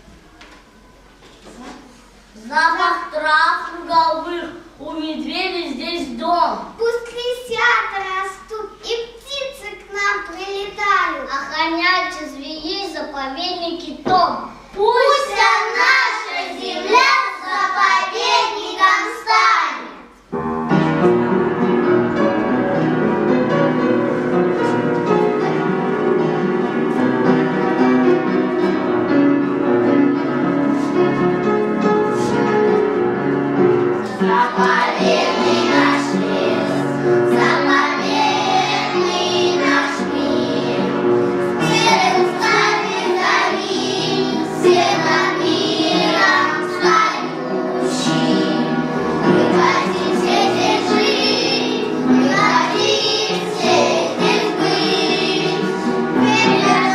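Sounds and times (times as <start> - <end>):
piano accompaniment: 0.0 - 1.2, 15.0 - 56.9
children singing: 14.9 - 20.1, 34.0 - 56.9.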